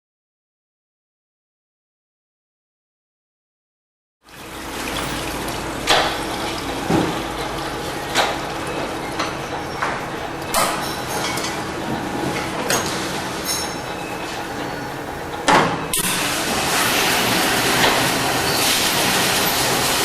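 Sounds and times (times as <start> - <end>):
faint motor hum: 4.3 - 20.0
spraying water rushing: 4.3 - 20.0
sharp metallic clanks: 4.5 - 16.3.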